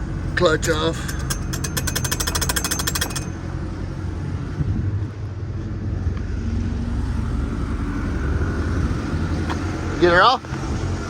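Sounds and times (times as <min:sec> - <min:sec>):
diesel truck engine idling: 0:00.0 - 0:11.0
fast sharp clicks: 0:00.6 - 0:03.5.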